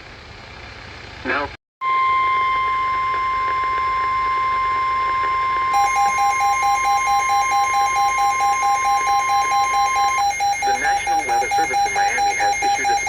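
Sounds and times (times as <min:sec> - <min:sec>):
steady emergency alert tone: 0:01.8 - 0:13.0
electronic alarm beeping rapidly: 0:05.8 - 0:13.0.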